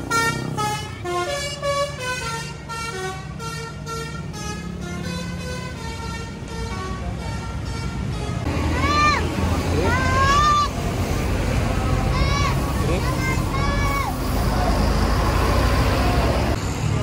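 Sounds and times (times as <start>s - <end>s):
bus multi-tone horn melody: 0.0s - 8.8s
bus engine running: 0.0s - 17.0s.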